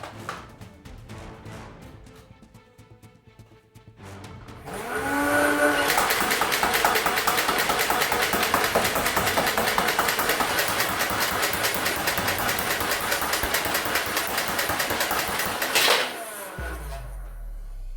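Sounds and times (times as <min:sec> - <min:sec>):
toy blaster mechanical clatter: 0:04.7 - 0:17.1.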